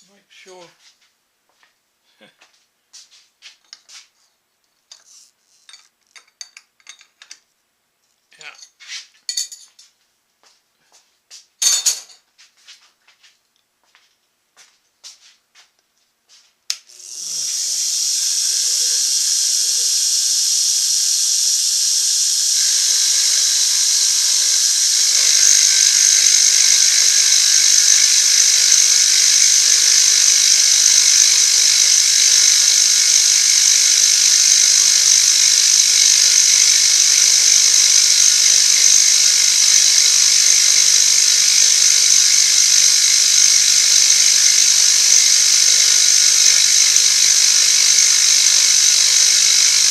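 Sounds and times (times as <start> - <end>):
machine tool whirring: 4.9 - 7.3, 16.8 - 49.9.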